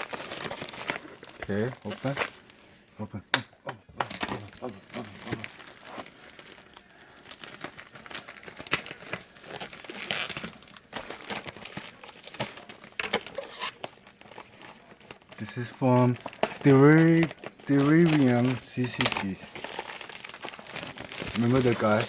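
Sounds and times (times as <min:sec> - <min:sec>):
packaging crinkling and rustling: 0:00.0 - 0:02.9, 0:04.0 - 0:22.0
sharp crackles: 0:04.1 - 0:14.5, 0:15.1 - 0:22.0.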